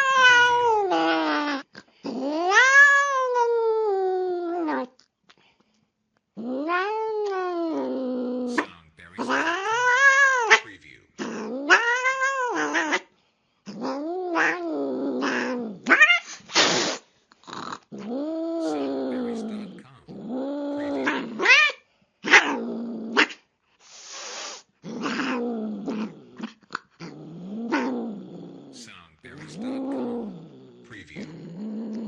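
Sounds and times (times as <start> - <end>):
cat hissing: 0.0 - 3.4, 6.7 - 13.1, 15.2 - 26.5, 28.7 - 32.0
cat growling and yowling: 0.0 - 5.0, 6.4 - 13.1, 13.7 - 23.4, 24.8 - 28.8, 29.4 - 32.0.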